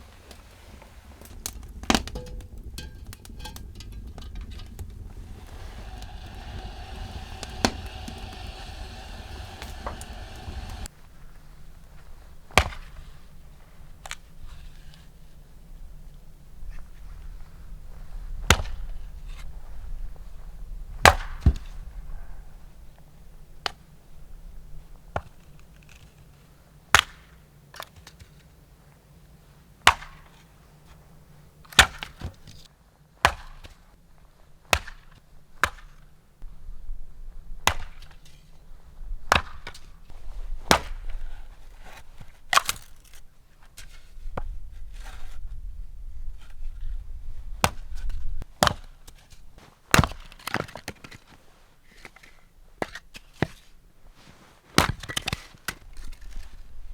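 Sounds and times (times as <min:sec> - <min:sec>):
low steady rumble: 0:00.4 - 0:10.9.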